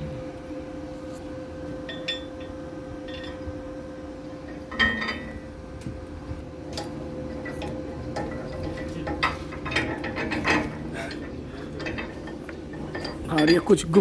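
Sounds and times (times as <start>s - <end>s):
steady hum: 0.0s - 14.0s
steel tools clinking on bolts: 13.0s - 14.0s.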